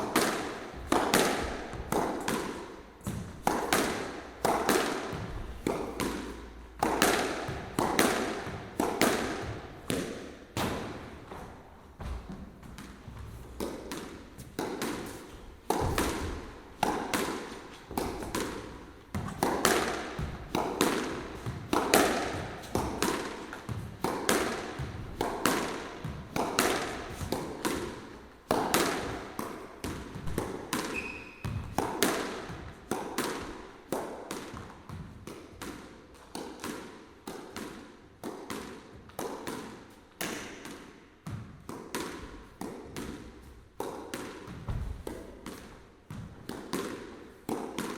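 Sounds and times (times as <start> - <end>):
squash racket strikes: 0.0 - 47.9
high squeak: 30.9 - 31.4.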